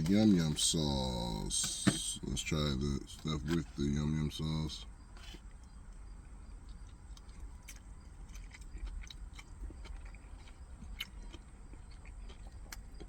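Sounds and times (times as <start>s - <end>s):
low steady hum: 0.0s - 13.0s
person chewing: 6.6s - 13.0s.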